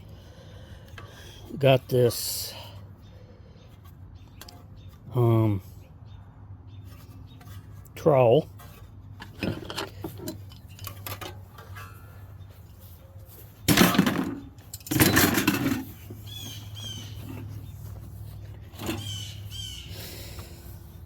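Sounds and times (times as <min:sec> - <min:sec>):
birds chirping: 0:00.0 - 0:21.0
hand tools clattering in a bin: 0:09.2 - 0:12.2, 0:13.6 - 0:16.2.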